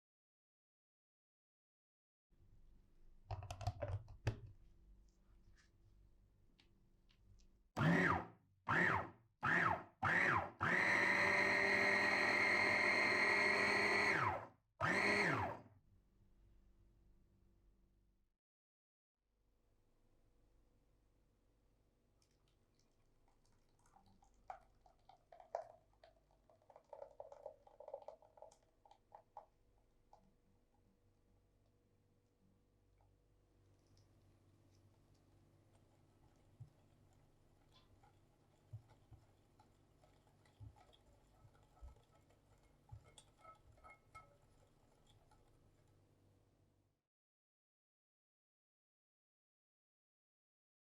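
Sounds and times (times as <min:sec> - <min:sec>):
batter being stirred in a bowl: 0:22.2 - 0:31.0, 0:33.0 - 0:46.6
utensil tapping mixing bowl: 0:37.8 - 0:45.8.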